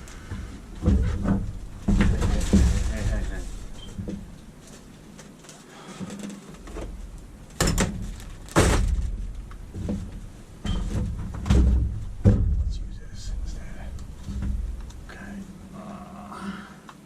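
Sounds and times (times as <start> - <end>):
low steady hum: 0.0 - 17.0
sharp knocks: 10.7 - 12.9, 14.2 - 14.8.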